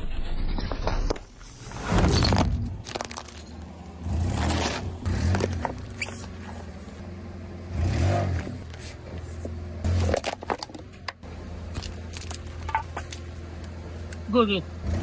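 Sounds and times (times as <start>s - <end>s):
objects crushed under tyre: 0.5s - 6.4s, 9.9s - 10.9s
car running slowly: 2.4s - 15.0s.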